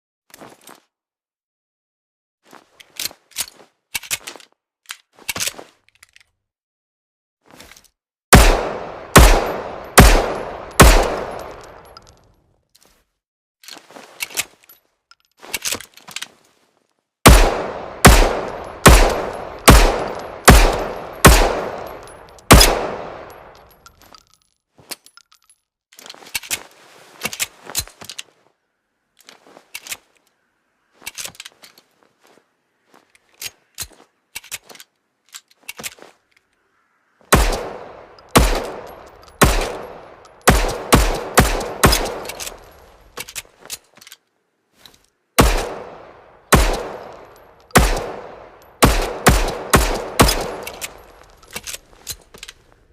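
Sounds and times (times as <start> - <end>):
pistol shots: 8.3 - 11.8, 17.2 - 23.6, 37.3 - 42.7, 45.4 - 51.1
metallic clicks and clacks: 18.0 - 25.7, 38.1 - 44.3, 46.5 - 52.6.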